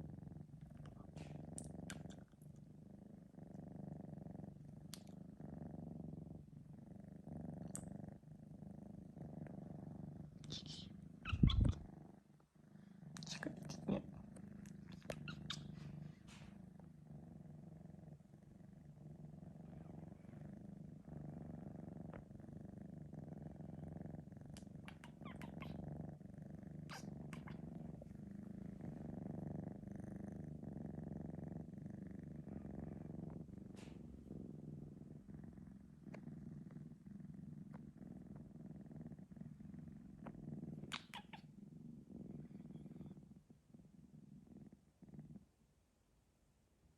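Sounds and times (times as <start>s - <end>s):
kitten purring: 0.0s - 46.9s
faint clicks: 4.8s - 5.2s, 40.2s - 41.4s.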